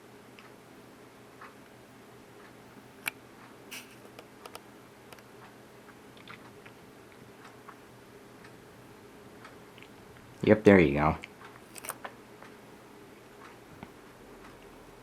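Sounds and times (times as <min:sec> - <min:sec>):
faint steady hum: 0:00.0 - 0:15.0
small clicks and taps: 0:03.8 - 0:05.3.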